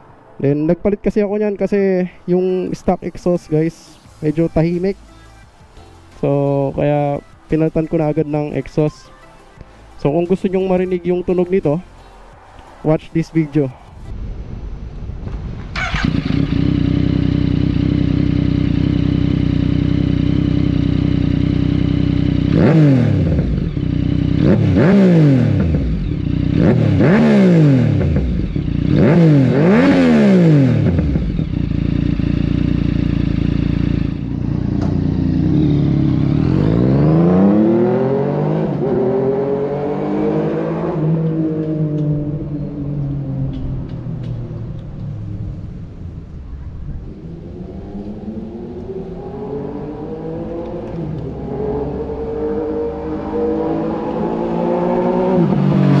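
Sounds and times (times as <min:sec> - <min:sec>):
motorcycle engine idling and revving: 0:14.7 - 0:56.0.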